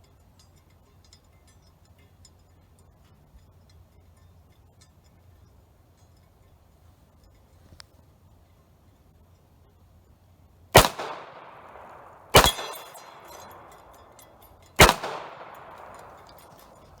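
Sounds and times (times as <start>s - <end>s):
pistol shots with echo: 10.8s - 16.9s
metallic ring of steel target: 10.8s - 17.0s.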